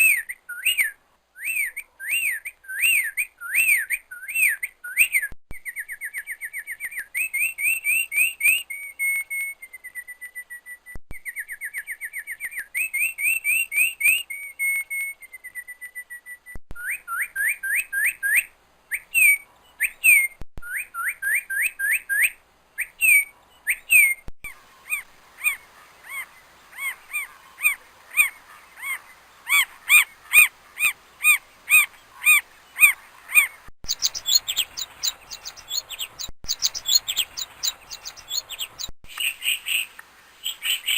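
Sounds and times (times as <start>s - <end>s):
bird song trills and chirps: 0.0s - 40.9s.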